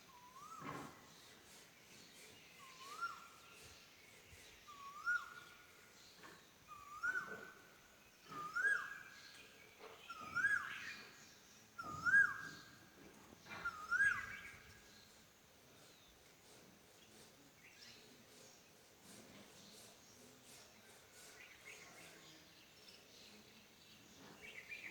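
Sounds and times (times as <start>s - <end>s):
cuckoo calling: 11.8s - 12.6s, 13.6s - 14.6s.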